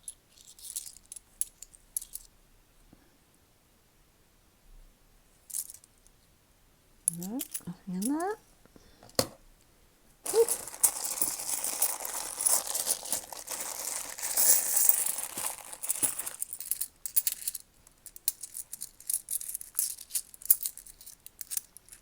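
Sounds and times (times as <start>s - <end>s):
bag of coins crinkling: 10.3s - 17.6s, 18.2s - 22.0s
coins clicking together: 10.3s - 22.0s.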